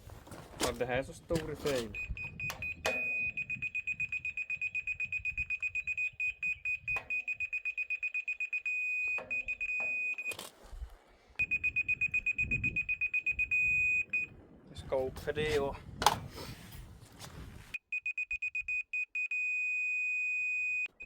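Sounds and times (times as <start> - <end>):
high-pitched receiver beeping: 1.9 - 10.4, 11.4 - 14.3.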